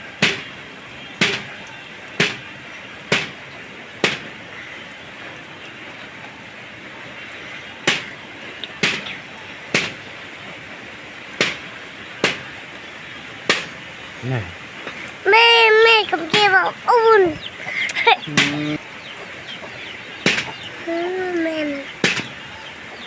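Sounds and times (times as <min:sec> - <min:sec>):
rain hissing: 0:00.0 - 0:23.0
sharp single taps: 0:01.2 - 0:01.6, 0:02.2 - 0:02.5, 0:03.1 - 0:03.4, 0:04.0 - 0:04.4, 0:07.9 - 0:09.2, 0:09.8 - 0:10.0, 0:11.4 - 0:12.5, 0:13.5 - 0:13.8, 0:17.9 - 0:18.8, 0:19.6 - 0:20.7, 0:21.3 - 0:22.4.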